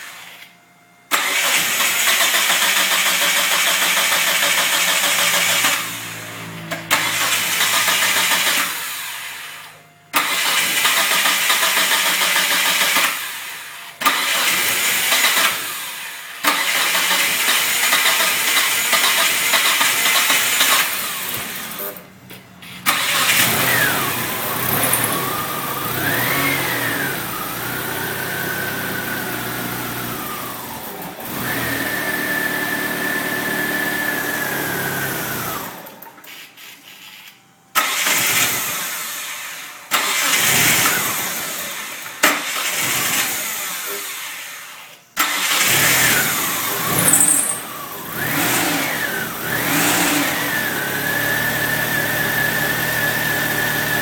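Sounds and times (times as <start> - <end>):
car engine starting and revving: 1.1 - 8.7, 22.8 - 30.6, 45.2 - 54.0.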